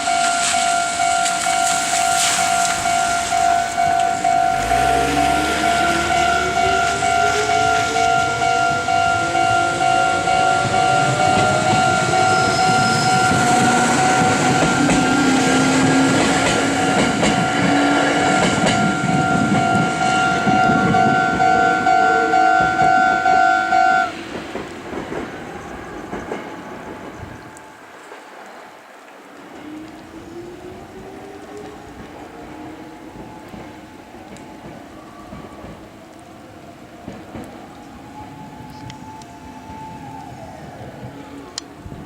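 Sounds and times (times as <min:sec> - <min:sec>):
train wheels clattering on rails: 0:00.0 - 0:23.5, 0:24.1 - 0:28.3, 0:31.6 - 0:36.0, 0:37.0 - 0:39.2
level-crossing electronic bell: 0:00.0 - 0:24.1
rising whine: 0:02.8 - 0:21.9.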